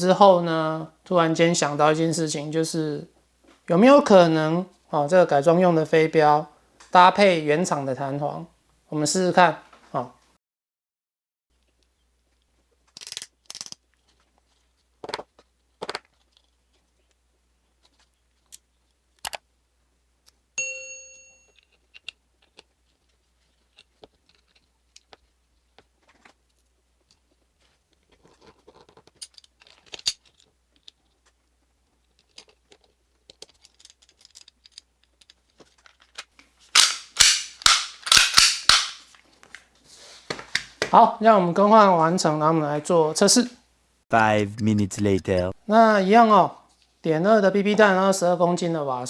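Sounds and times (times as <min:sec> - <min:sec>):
pistol parts clicking and clacking: 0:12.9 - 0:13.8, 0:28.4 - 0:31.0, 0:32.0 - 0:39.6
short metallic ding: 0:20.6 - 0:21.6.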